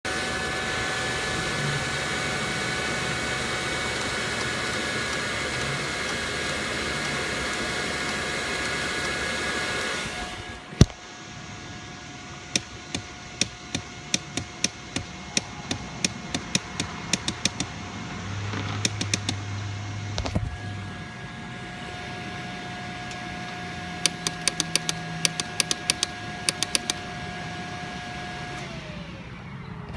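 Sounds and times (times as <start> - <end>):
loud whirring hiss: 0.1 - 20.2, 23.8 - 27.2
steady whine: 0.1 - 27.2
motorcycle click: 12.6 - 17.7, 18.8 - 19.4, 24.0 - 27.0.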